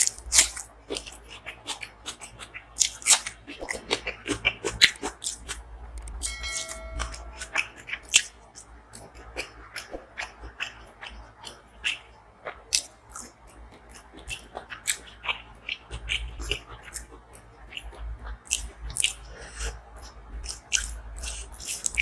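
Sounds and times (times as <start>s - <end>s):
chewing and biting food: 0.0s - 6.4s, 7.5s - 22.0s
wet mouth clicks: 12.7s - 22.0s.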